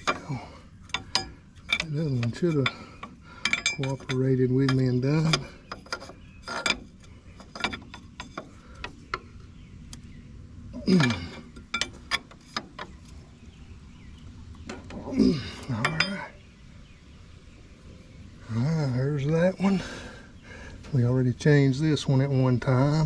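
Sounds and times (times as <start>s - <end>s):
wrench and metal fittings clinking: 0.0s - 8.6s, 15.3s - 16.3s.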